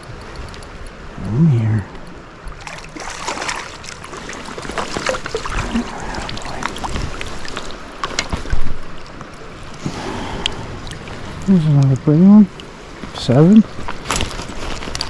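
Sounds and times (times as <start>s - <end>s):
stream rushing: 0.0s - 15.0s
fish splashing in water: 2.6s - 9.0s.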